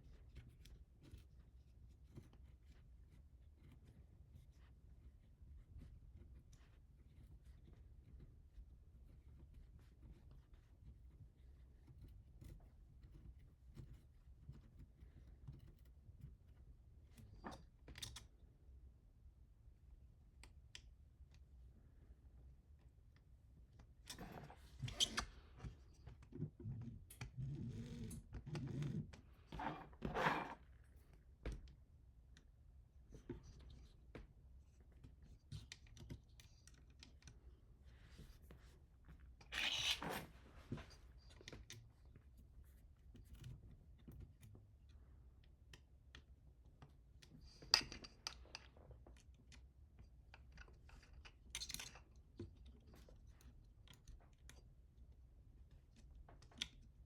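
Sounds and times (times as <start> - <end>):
small parts clicking and rustling: 47.2 - 54.7.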